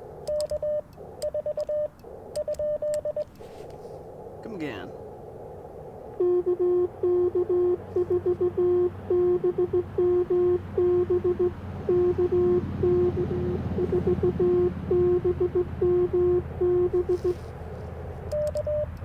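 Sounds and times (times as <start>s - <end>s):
low steady hiss: 0.0s - 19.0s
morse code tone: 0.3s - 3.3s, 6.2s - 17.4s, 18.3s - 19.0s.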